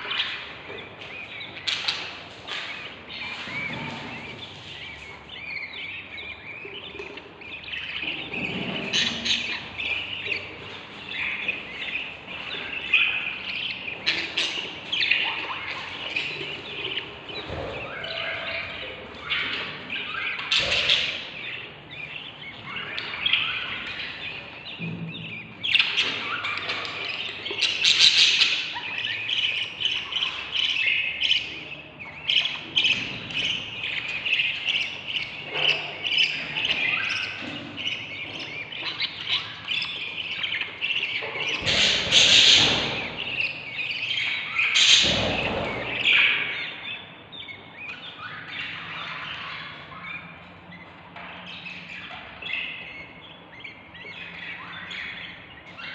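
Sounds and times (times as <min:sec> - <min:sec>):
budgerigar chicks chirping: 0:00.0 - 0:55.9
harsh chick squawks: 0:17.6 - 0:19.0.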